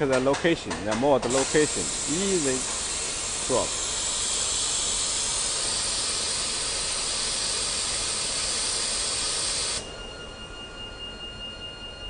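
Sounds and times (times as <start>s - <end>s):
machine hum with faint whine: 0.0s - 12.0s
compressed air hissing: 1.2s - 9.8s.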